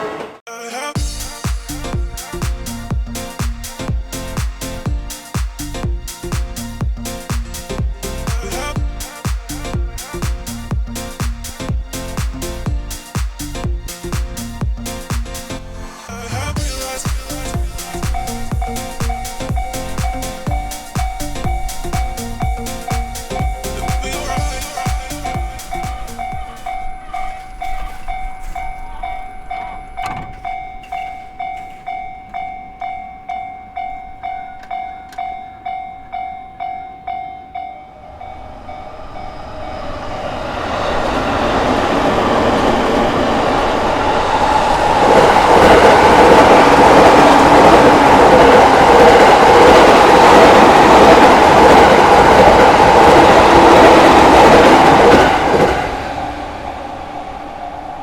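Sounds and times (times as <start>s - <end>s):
level crossing warning bell: 16.7s - 39.8s.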